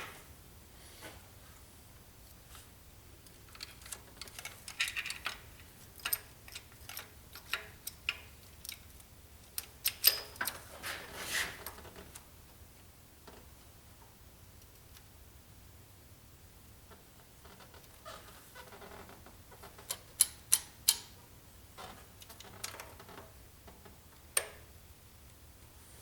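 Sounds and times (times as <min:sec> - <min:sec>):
metal parts clicking and clinking: 0:03.5 - 0:08.8.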